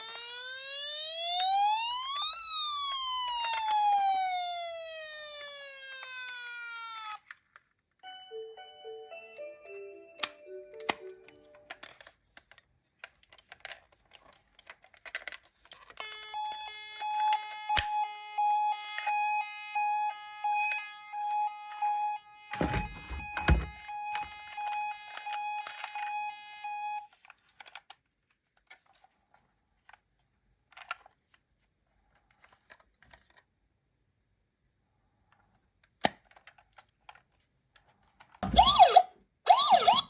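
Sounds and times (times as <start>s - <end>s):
toy ambulance siren: 0.0s - 12.1s, 15.9s - 27.3s, 38.4s - 40.0s
plastic toy car clicking: 10.2s - 16.2s, 27.1s - 29.1s, 30.6s - 31.4s, 35.8s - 38.4s.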